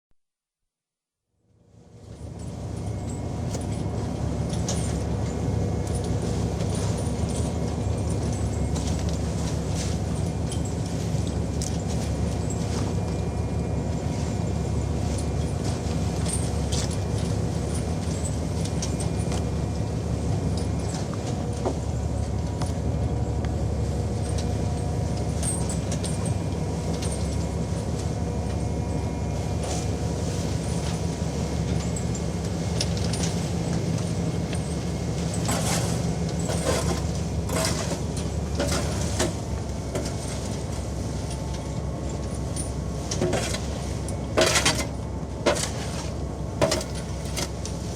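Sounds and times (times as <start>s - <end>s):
boat engine droning: 1.9s - 47.9s.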